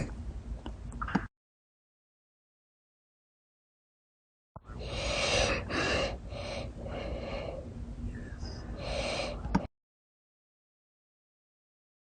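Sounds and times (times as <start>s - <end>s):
person breathing hard: 4.7s - 7.8s, 8.4s - 9.6s.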